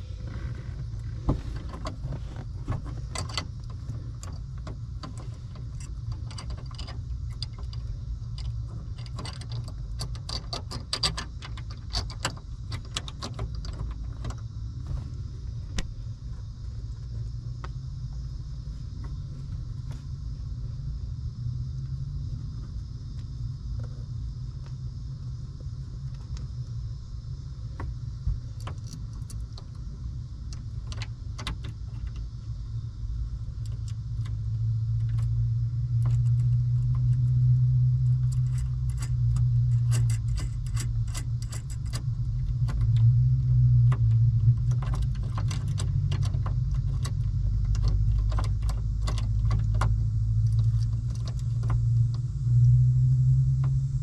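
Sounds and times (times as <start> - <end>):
steady low hum: 0.0 - 54.0
small metal hardware clinking: 38.2 - 42.8.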